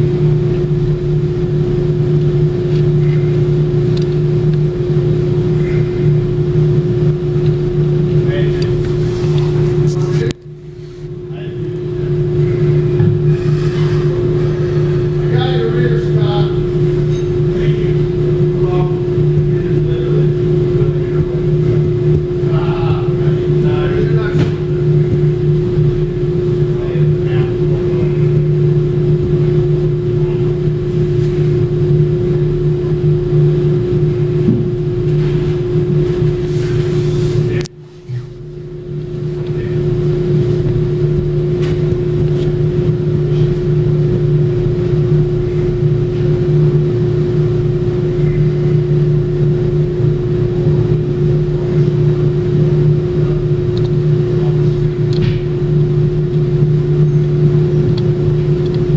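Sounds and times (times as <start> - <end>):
steady mechanical hum: 0.0 - 58.9.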